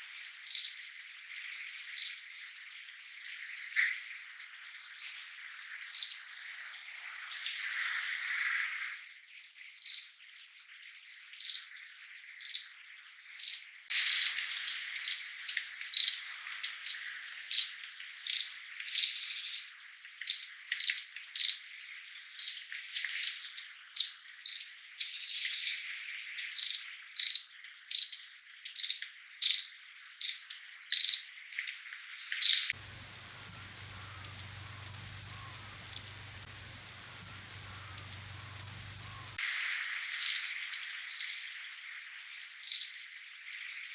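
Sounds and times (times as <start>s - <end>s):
short high bird calls: 32.8s - 39.4s
thin very high bird notes: 32.8s - 39.4s.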